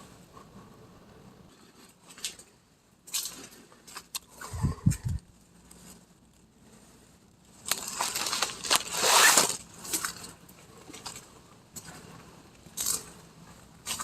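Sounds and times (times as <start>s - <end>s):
dry leaves crunching: 7.6s - 10.1s.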